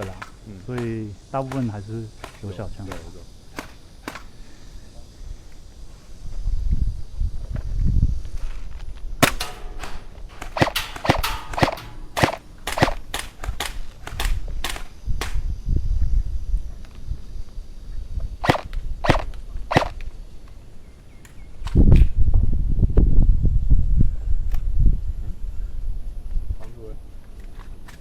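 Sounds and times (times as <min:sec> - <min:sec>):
airsoft gun shots: 0:09.2 - 0:15.4, 0:18.4 - 0:20.0.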